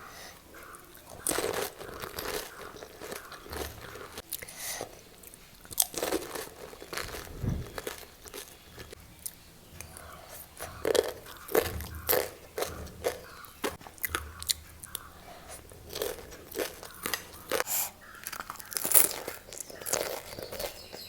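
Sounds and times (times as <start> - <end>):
crisp snack crunching: 0.6 - 4.5, 5.1 - 9.4, 15.8 - 21.0.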